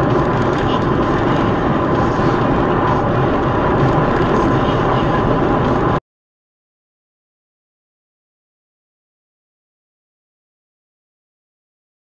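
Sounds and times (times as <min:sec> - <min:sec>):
vehicle rumble and hiss: 0:00.0 - 0:06.0.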